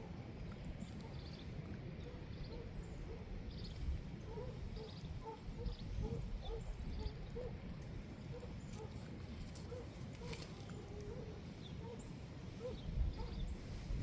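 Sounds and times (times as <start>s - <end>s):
distant dogs barking: 8.3s - 9.0s, 9.6s - 13.4s.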